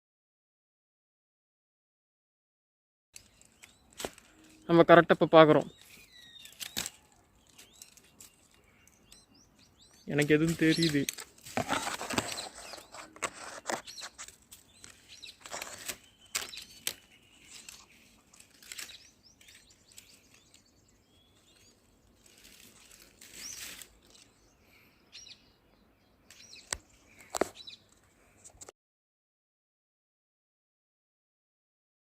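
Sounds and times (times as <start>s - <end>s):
rustling: 3.2s - 4.8s, 5.6s - 9.1s, 9.9s - 20.7s, 21.4s - 24.4s
faint bird chirps: 11.7s - 28.5s.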